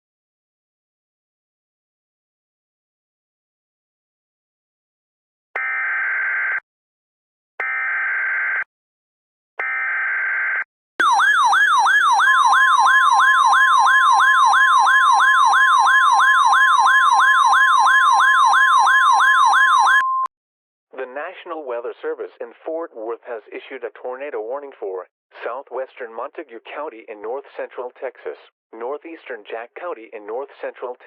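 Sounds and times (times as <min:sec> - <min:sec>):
warbling siren-like tone: 0:11.0 - 0:20.0.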